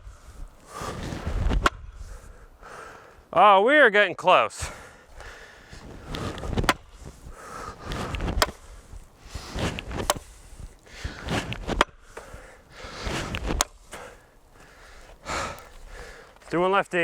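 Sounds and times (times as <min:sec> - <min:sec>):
heavy breathing: 0:00.0 - 0:03.3, 0:04.5 - 0:16.6
axe chopping into log: 0:05.8 - 0:06.9, 0:07.8 - 0:08.6, 0:09.4 - 0:10.3.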